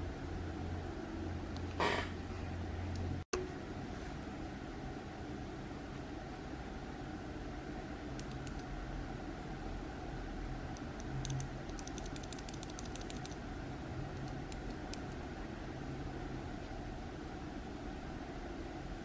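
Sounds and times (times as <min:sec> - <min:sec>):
steady low hum: 0:00.0 - 0:19.0
mechanical keyboard keystrokes: 0:08.2 - 0:08.7, 0:11.0 - 0:13.4, 0:14.2 - 0:15.2.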